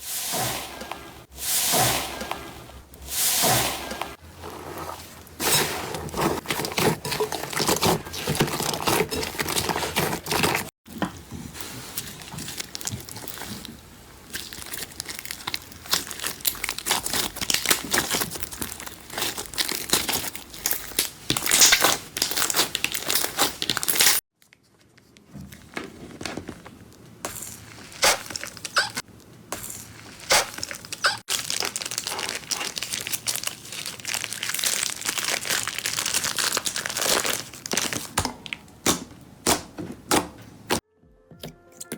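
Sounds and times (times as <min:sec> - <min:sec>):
slime crackling and crinkling: 0:03.6 - 0:24.4, 0:27.3 - 0:39.6.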